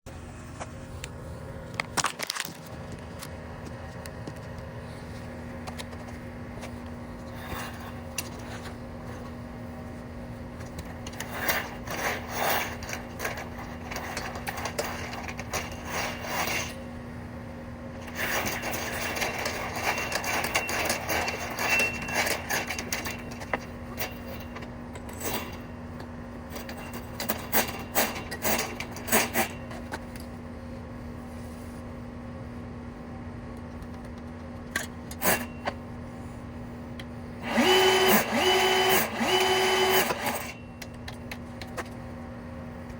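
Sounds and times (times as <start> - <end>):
steady low hum: 0.1 - 42.9
scraping and rubbing: 11.1 - 16.8, 18.0 - 24.6.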